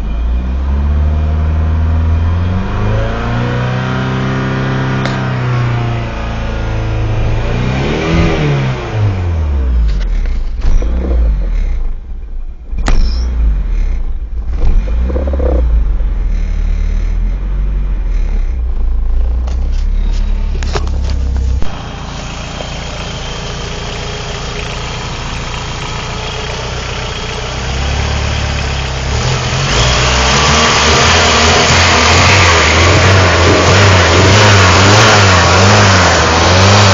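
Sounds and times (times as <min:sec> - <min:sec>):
car engine idling roughly: 0:14.3 - 0:34.8
engine knocks: 0:14.4 - 0:17.4.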